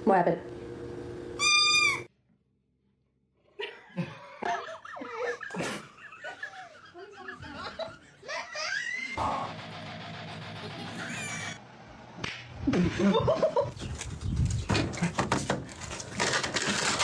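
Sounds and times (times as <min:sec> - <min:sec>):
high-pitched arching call: 0:01.4 - 0:02.1
people laughing: 0:03.6 - 0:09.2, 0:12.6 - 0:13.7.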